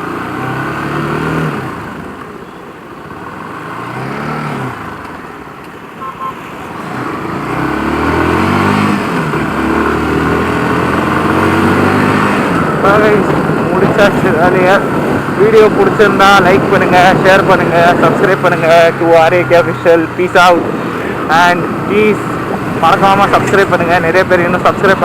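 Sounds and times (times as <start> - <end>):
motorcycle engine revving: 0.0 - 5.5, 6.1 - 25.0
short beeps: 6.0 - 6.4.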